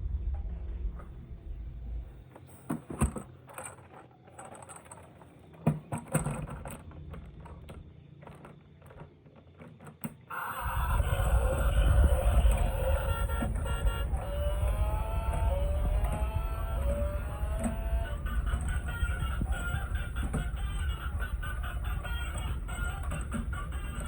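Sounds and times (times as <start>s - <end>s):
low rumble: 0.0s - 2.3s, 10.3s - 24.0s
plastic toys clicking and scraping: 2.3s - 24.0s.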